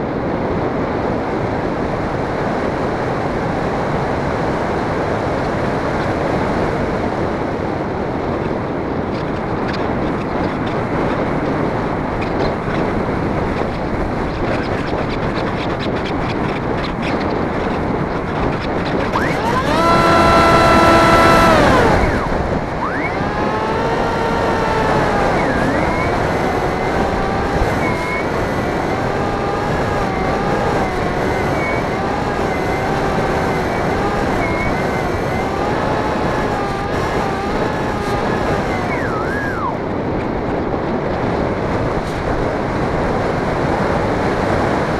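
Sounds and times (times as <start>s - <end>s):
propeller motor whining: 18.9s - 40.0s.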